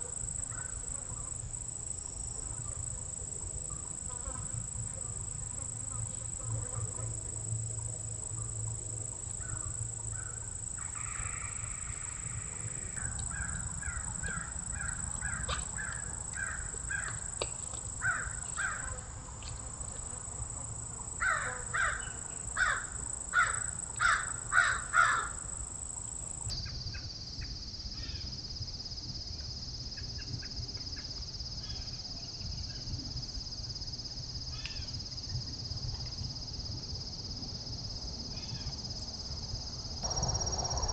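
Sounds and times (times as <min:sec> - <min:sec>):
insects buzzing: 0:00.0 - 0:40.9
crow cawing: 0:13.0 - 0:17.2, 0:18.0 - 0:18.9, 0:21.2 - 0:22.0, 0:22.6 - 0:25.4.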